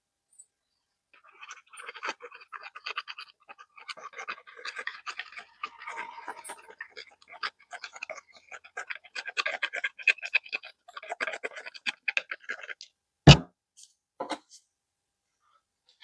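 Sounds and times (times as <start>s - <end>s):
heavy thump: 13.3s - 13.5s.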